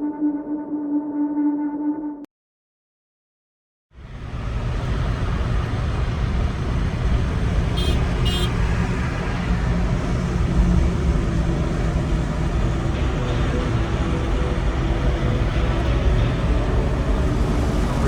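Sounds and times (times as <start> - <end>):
car road and engine rumble: 4.0 - 18.0.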